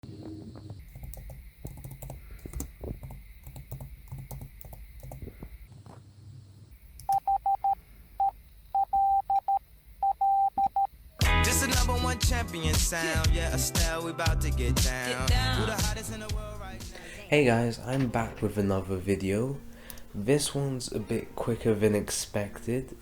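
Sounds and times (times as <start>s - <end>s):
computer keyboard typing: 0.9s - 5.4s
morse code tone beeping: 7.1s - 10.9s.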